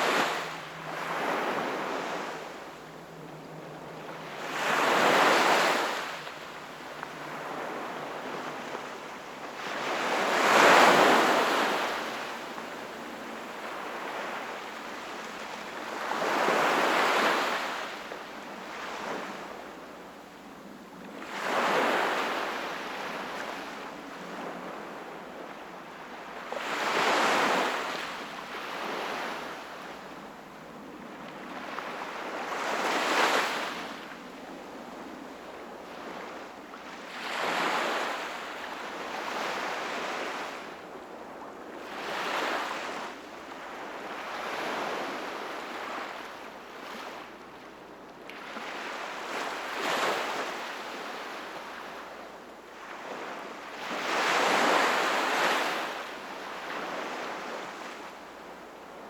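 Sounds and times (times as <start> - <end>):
sea waves breaking: 0.0 - 6.4.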